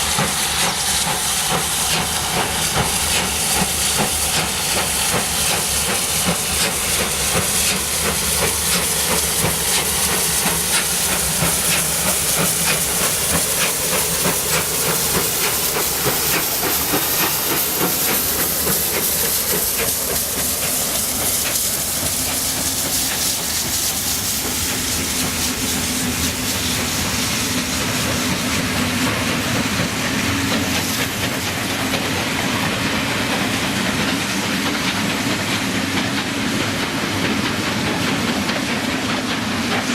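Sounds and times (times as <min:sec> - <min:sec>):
steam locomotive hissing: 0:00.0 - 0:39.9
wheels clattering on rails: 0:00.0 - 0:39.9.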